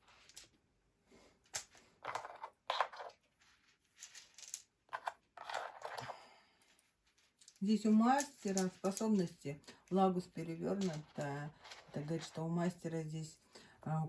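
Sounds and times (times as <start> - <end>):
cards rustling and sliding: 1.5 - 6.3.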